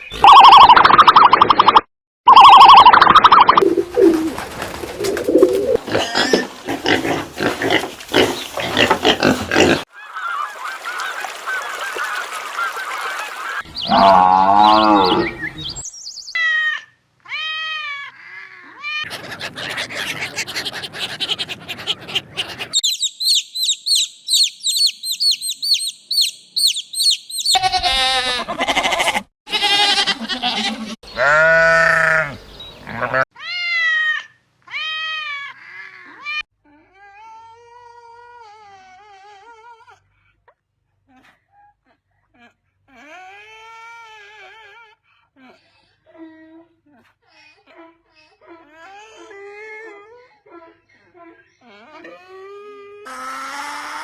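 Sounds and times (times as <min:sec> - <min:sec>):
farm animal and bird calls: 0:03.6 - 0:10.5, 0:13.6 - 0:16.6, 0:18.2 - 0:28.0, 0:29.6 - 0:33.2.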